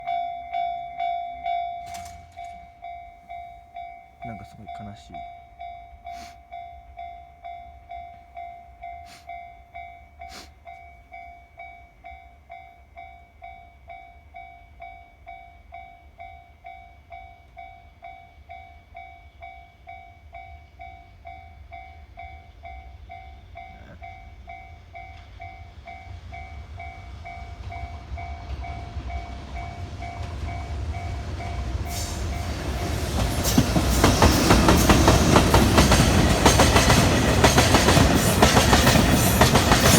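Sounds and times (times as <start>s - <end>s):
train wheels clattering on rails: 1.8s - 3.0s, 25.0s - 39.9s
train rumbling: 21.4s - 39.9s.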